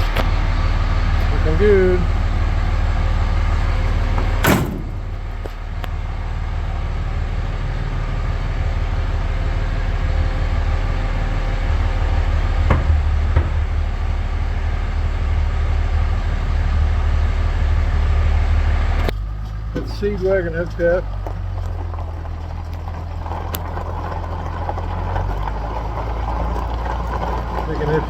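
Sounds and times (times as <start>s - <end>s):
truck engine idling: 0.0s - 28.0s
sharp knock: 4.4s - 5.2s.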